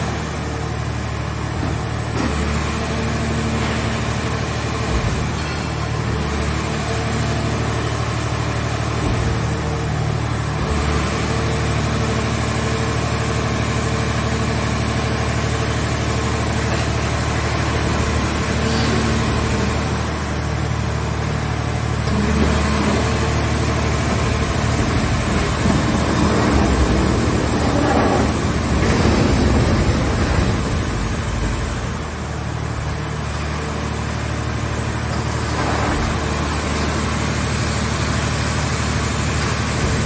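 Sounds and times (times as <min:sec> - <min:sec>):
hydraulic power unit humming: 0:14.6 - 0:40.0.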